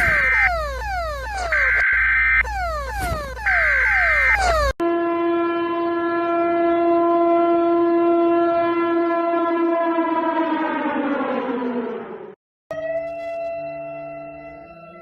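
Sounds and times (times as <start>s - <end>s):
steady alarm tone: 0.0s - 4.8s
reversed warning siren wail: 0.0s - 15.0s.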